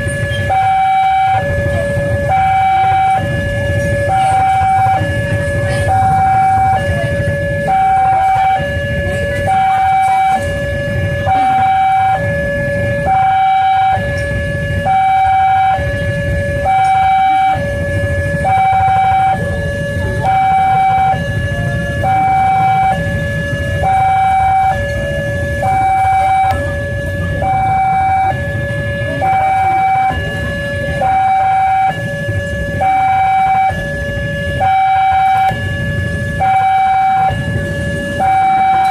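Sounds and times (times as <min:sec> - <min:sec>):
two-tone electronic siren: 0:00.0 - 0:38.9.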